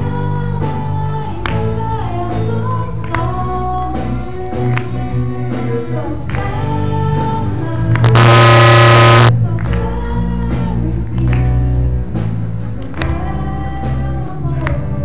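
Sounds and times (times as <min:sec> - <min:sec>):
harsh burst of noise: 0:08.0 - 0:09.3.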